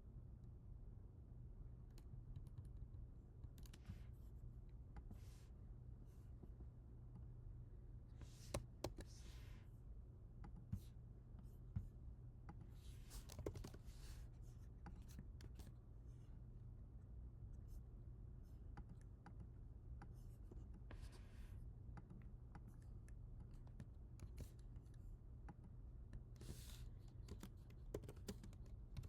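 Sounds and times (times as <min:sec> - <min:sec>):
low steady hum: 0:00.0 - 0:29.0
keyboard keys clicking: 0:27.3 - 0:29.0.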